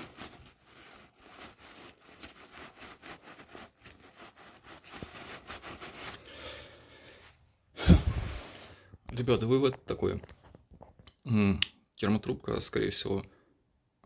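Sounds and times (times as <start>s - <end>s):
backpack fabric rustling: 0.0s - 6.3s.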